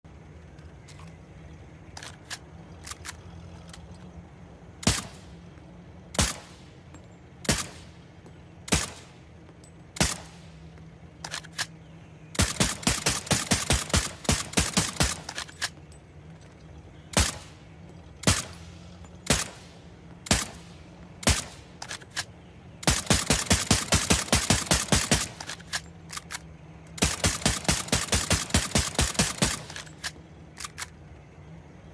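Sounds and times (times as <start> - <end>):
suppressed pistol shots: 4.8 - 5.3, 6.1 - 6.7, 7.4 - 8.0, 8.6 - 9.2, 10.0 - 10.6, 11.2 - 15.8, 17.1 - 30.9.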